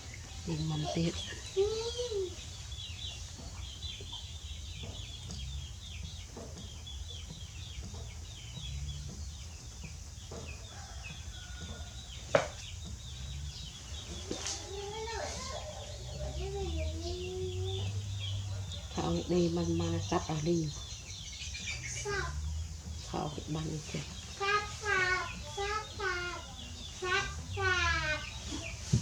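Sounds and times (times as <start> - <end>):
chicks peeping: 0.0 - 29.0.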